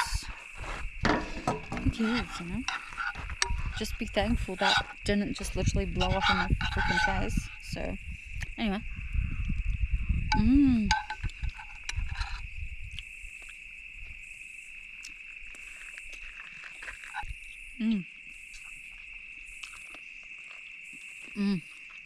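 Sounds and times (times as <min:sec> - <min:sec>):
insects chirring: 0:00.0 - 0:22.0.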